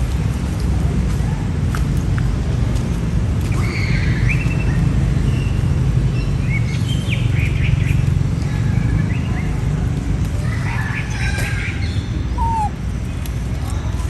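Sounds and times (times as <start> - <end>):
high chirping calls: 11.0 - 12.8.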